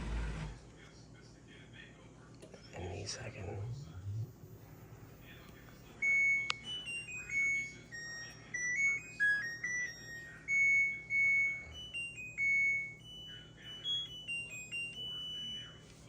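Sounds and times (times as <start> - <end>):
dishwasher beeping melody: 3.4 - 16.0.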